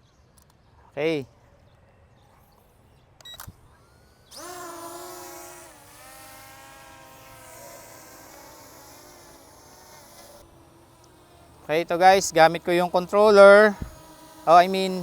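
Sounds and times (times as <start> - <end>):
drone motors whining: 3.3 - 15.0.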